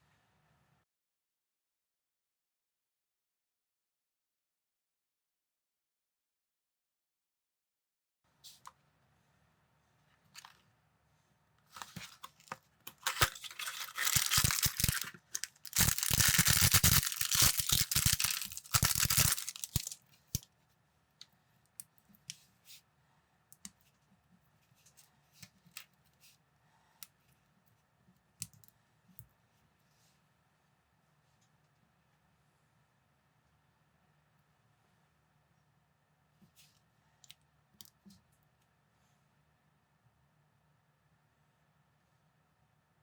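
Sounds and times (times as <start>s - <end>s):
plastic bag tearing and crinkling: 11.8s - 20.0s
plastic bricks clicking: 12.4s - 20.0s.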